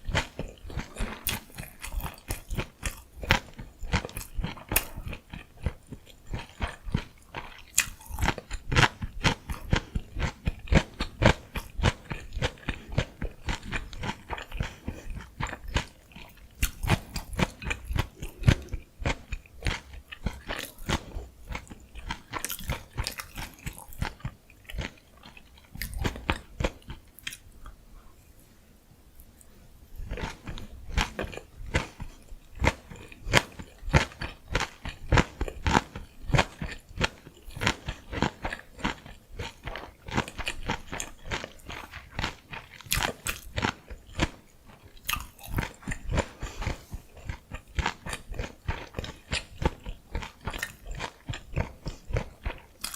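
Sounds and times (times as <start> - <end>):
close-miked chewing and crunching: 0.0 - 27.8, 29.2 - 52.9.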